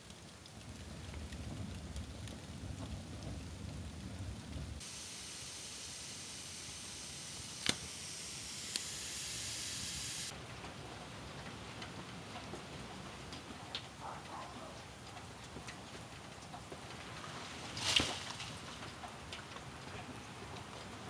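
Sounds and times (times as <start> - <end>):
snow falling hiss: 0.0 - 10.6, 16.6 - 18.9.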